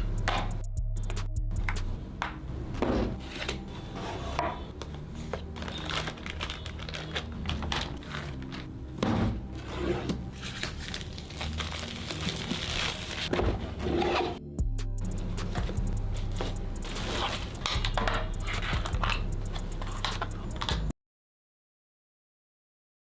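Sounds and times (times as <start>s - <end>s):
plastic packaging crinkling: 5.2s - 8.7s, 10.3s - 13.3s.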